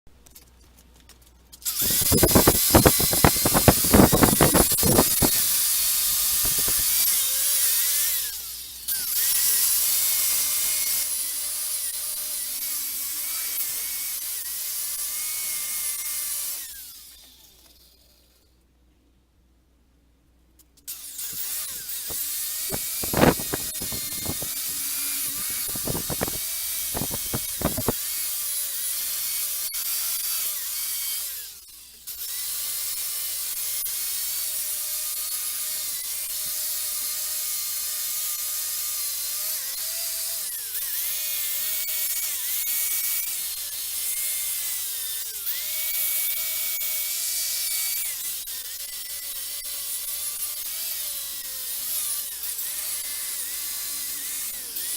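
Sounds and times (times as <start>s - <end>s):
power tool whining and grinding: 1.6s - 18.4s, 20.9s - 54.9s.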